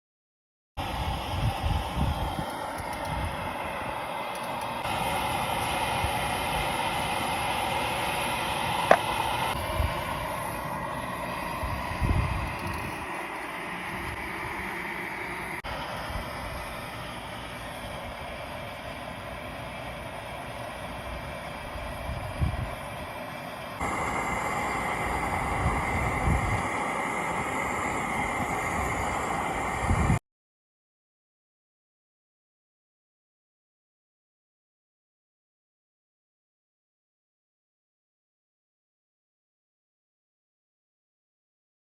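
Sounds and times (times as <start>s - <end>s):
pressure burner roaring: 0.8s - 30.2s.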